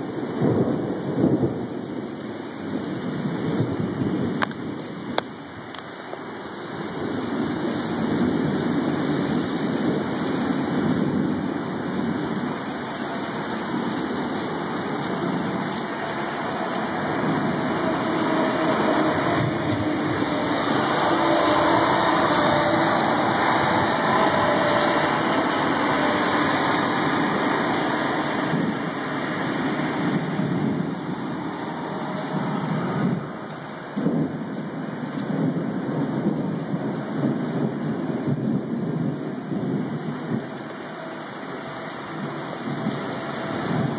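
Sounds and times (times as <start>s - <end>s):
heavy rain pouring: 0.0s - 43.9s
thunder rumble: 0.0s - 43.9s.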